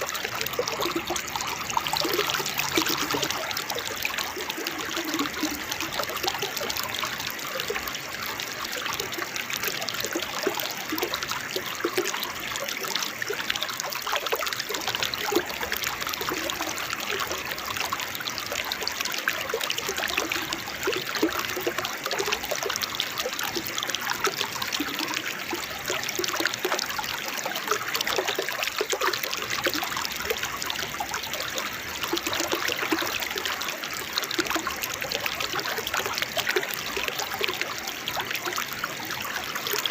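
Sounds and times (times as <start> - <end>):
water splashing over rocks: 0.0 - 39.9.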